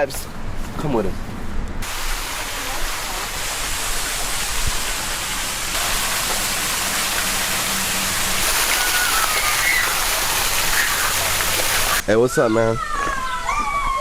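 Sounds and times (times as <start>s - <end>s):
steady rain hiss: 1.8s - 12.0s.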